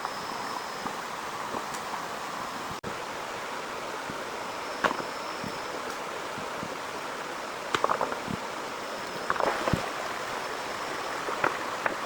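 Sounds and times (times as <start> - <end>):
heavy rain hissing: 0.0 - 12.0.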